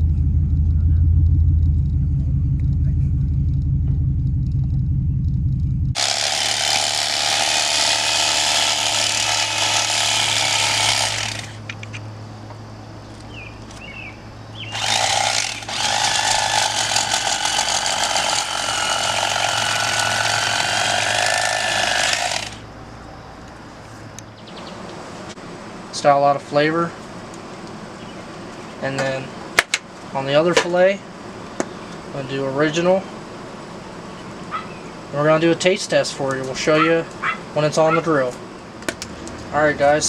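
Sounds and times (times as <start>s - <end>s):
electric knife buzzing: 5.9s - 11.7s, 14.7s - 22.7s.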